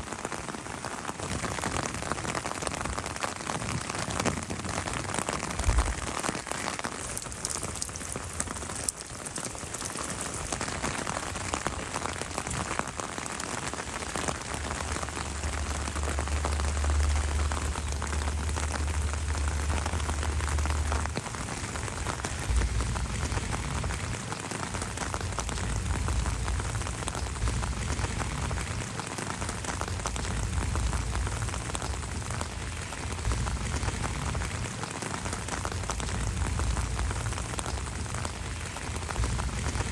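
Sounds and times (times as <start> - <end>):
steady rain: 0.0 - 39.9
low rumble: 14.5 - 39.9.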